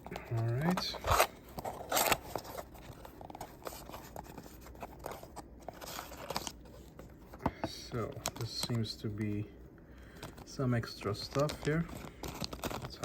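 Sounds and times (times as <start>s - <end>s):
packaging rustling: 0.0s - 7.4s, 10.1s - 13.0s.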